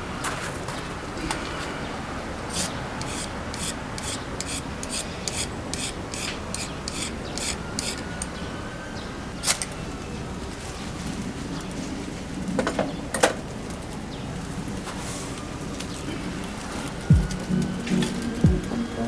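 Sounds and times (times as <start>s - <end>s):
rasping scrape strokes: 2.5s - 8.0s.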